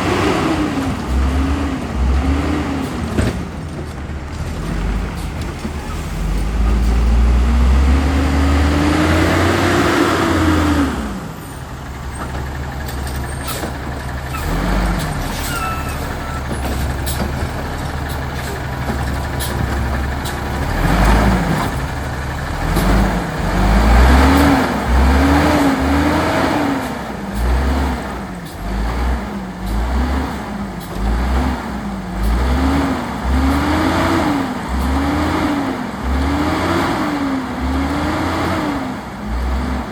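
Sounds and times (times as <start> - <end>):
truck engine revving: 0.0 - 39.9
sharp knocks and clanks: 11.9 - 25.0.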